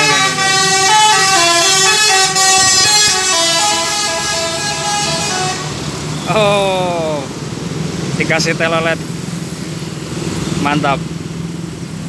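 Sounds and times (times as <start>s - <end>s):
musical air horns playing a tune: 0.0s - 5.8s.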